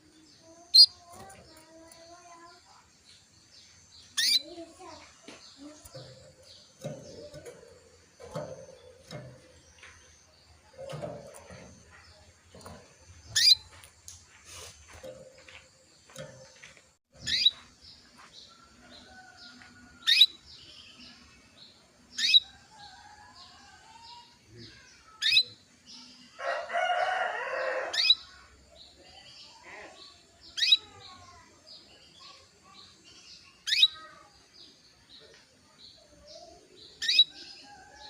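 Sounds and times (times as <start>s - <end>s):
faint bird twittering: 0.0s - 2.6s, 4.0s - 8.0s, 13.1s - 15.0s, 36.2s - 38.0s
canary chirping: 0.0s - 19.3s, 20.0s - 21.3s, 22.1s - 22.8s, 23.9s - 26.1s, 27.9s - 31.4s, 32.0s - 34.1s, 35.9s - 37.9s.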